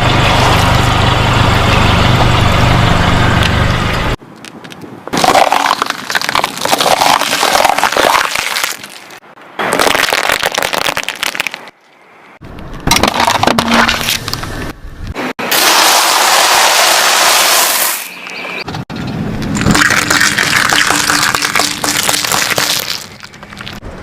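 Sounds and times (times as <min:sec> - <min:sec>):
low engine hum: 0:00.0 - 0:04.2
tyres crushing crunchy objects: 0:04.4 - 0:11.8, 0:12.8 - 0:14.5, 0:19.5 - 0:23.8.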